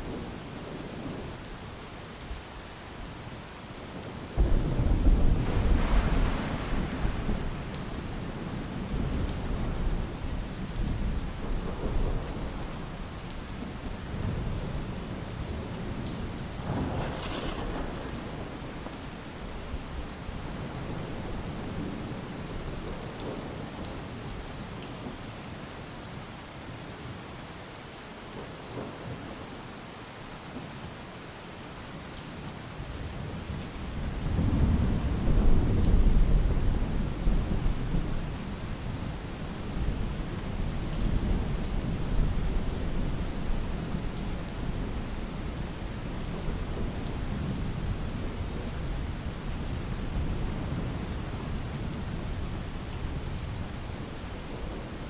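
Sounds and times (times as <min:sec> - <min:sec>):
heavy rain falling: 0:00.0 - 0:55.0
thunder rumbling: 0:04.4 - 0:13.2, 0:14.1 - 0:23.4.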